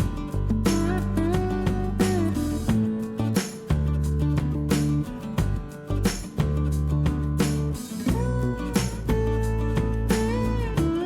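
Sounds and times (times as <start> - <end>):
instrumental music with guitar: 0.0 - 11.0.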